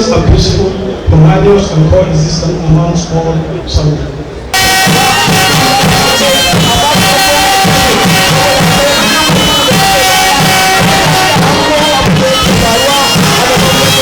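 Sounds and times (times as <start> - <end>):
music with steady drum beat: 4.6 - 14.0.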